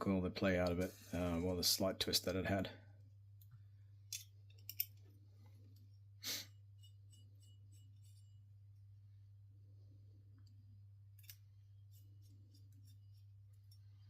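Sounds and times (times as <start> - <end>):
low electrical hum: 0.0 - 14.0
clicks of small metal parts: 4.1 - 5.0.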